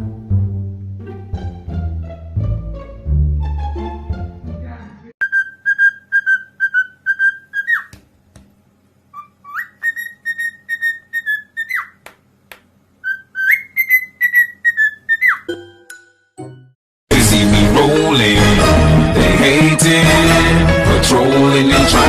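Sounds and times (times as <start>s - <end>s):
pet bird whistling: 5.2s - 8.0s, 9.1s - 12.0s, 13.0s - 15.5s.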